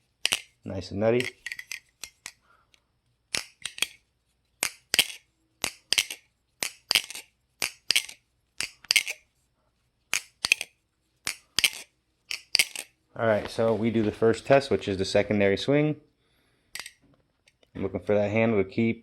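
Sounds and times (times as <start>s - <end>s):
butterfly knife handles clacking: 0.1s - 2.4s, 3.3s - 4.0s, 4.6s - 9.2s, 10.1s - 13.0s, 16.8s - 17.7s.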